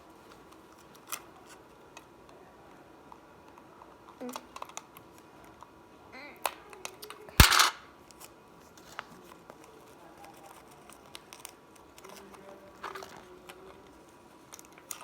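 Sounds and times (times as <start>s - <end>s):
paper crinkling and clicks: 8.1s - 15.0s.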